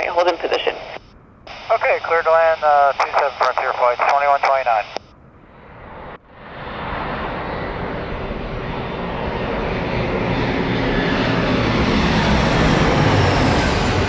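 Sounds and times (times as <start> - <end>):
jet engines passing: 0.0 - 14.0.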